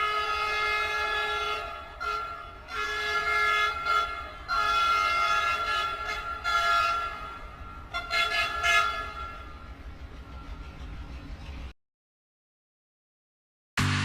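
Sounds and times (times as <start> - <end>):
train horn blasts: 0.0 - 10.6.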